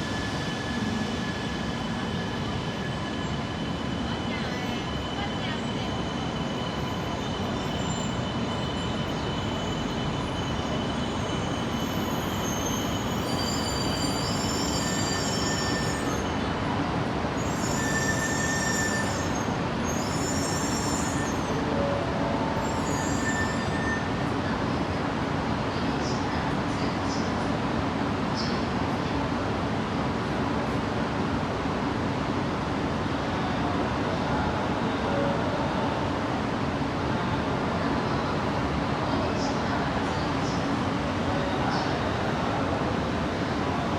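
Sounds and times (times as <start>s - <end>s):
train wheels squealing: 0.0s - 24.5s.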